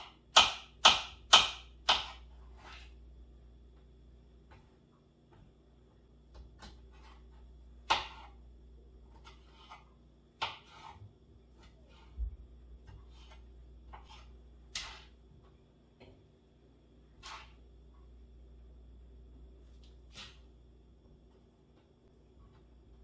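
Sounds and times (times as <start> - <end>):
utensil scraping casserole dish: 1.9 - 3.0, 9.0 - 12.2, 12.8 - 15.2, 17.2 - 17.6.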